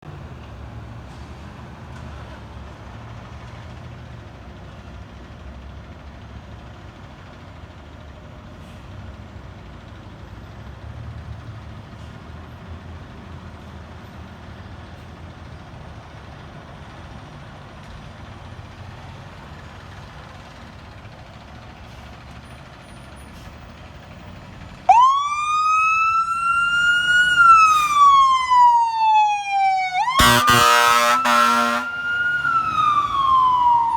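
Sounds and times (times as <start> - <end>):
fire engine siren: 24.8 - 33.9.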